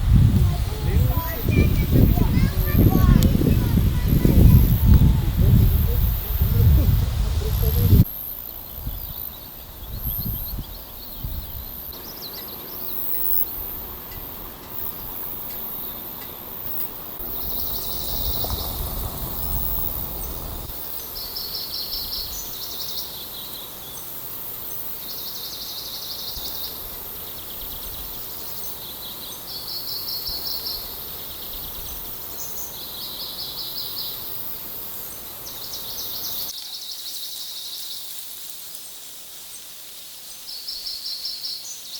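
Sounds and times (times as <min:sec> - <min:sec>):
low rumbling noise: 0:00.0 - 0:08.0, 0:17.2 - 0:20.7
steady background hiss: 0:00.0 - 0:41.9
songbird trilling: 0:00.3 - 0:37.9.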